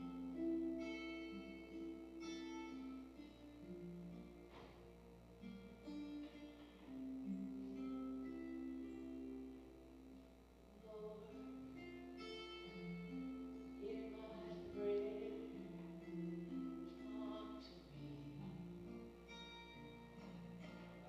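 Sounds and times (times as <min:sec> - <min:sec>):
guitar: 0:00.0 - 0:21.0
held organ-like notes: 0:00.0 - 0:21.0
person singing: 0:13.7 - 0:18.5.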